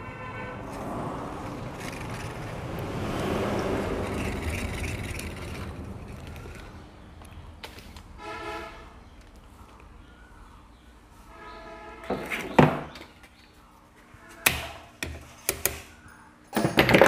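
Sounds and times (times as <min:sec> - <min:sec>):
vehicle passing by: 0:00.0 - 0:07.1.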